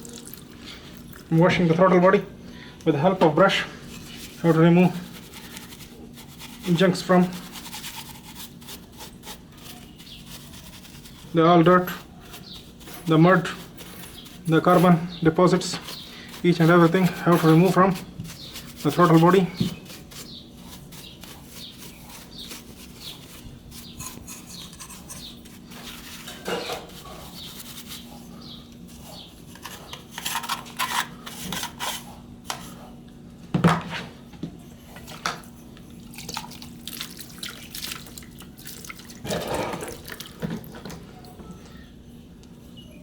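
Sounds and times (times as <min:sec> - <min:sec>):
faint steady hum: 0:00.0 - 0:33.6
brush scrubbing in solvent: 0:03.0 - 0:32.1.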